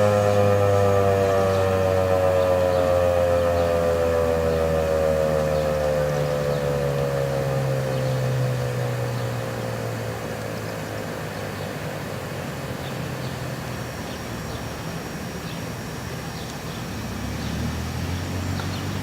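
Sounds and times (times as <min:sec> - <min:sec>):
siren winding down: 0:00.0 - 0:11.4
outdoor background noise: 0:00.0 - 0:19.0.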